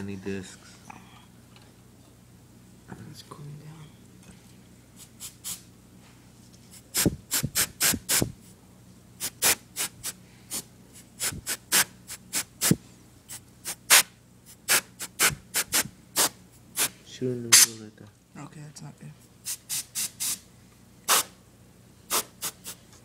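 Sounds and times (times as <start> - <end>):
quick rubbing strokes: 6.7 - 8.4, 9.2 - 17.0.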